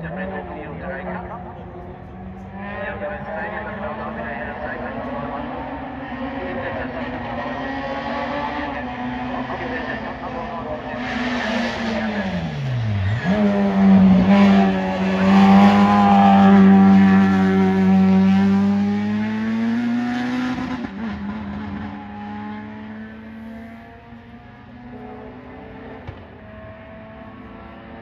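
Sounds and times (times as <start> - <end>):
race car engine at high revs: 0.0 - 28.0.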